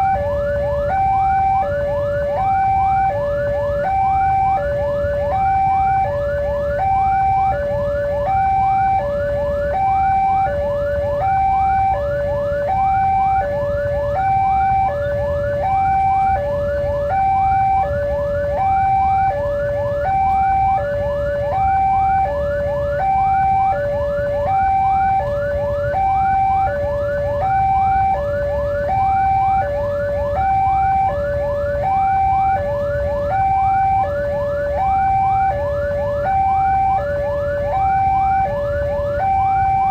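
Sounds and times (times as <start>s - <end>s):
two-tone crossing alarm: 0.0s - 39.9s.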